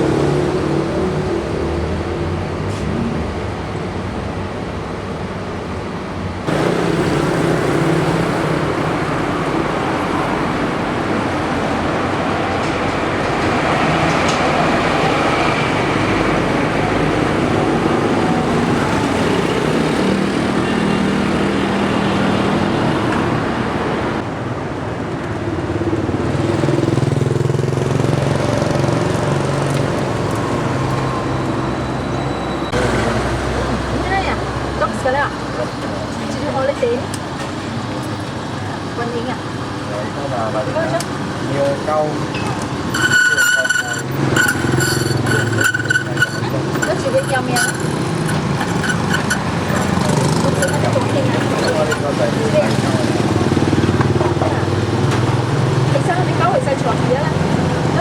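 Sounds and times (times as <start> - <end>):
cars and motorcycles passing: 0.0 - 4.2, 6.4 - 58.0.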